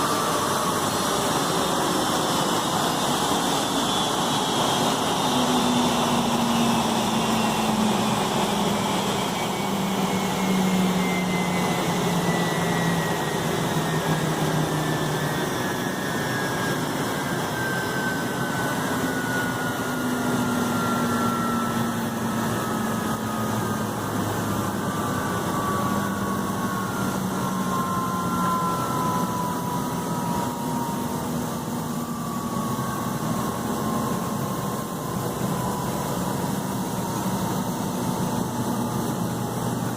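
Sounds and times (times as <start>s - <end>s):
jet engines running: 0.0s - 39.9s.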